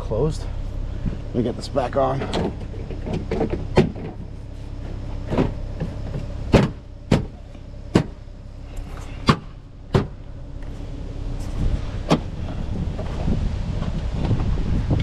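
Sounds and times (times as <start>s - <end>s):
engine idling hum: 0.0s - 15.0s
sharp clicks and knocks: 5.3s - 8.2s.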